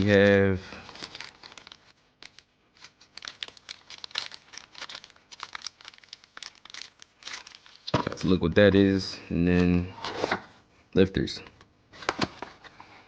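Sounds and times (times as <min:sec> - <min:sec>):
packaging crinkling and tearing: 0:00.0 - 0:08.4.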